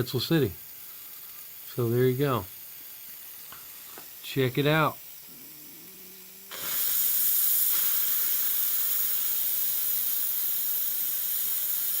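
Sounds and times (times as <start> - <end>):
steam hissing from boiler: 0.0 - 12.0
faint low hum: 5.2 - 6.5.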